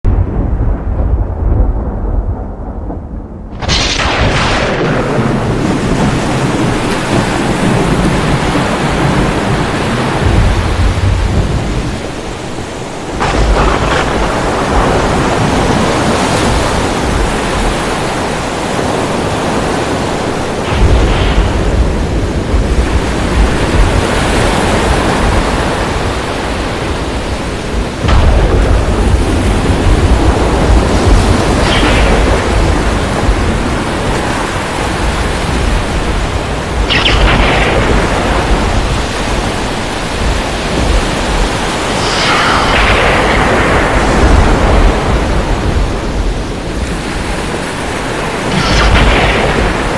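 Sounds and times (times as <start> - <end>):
thunder crack: 0.0 - 26.8, 27.8 - 47.3, 48.0 - 49.9
heavy rain: 0.0 - 49.9
thunder rumbling: 0.0 - 49.9.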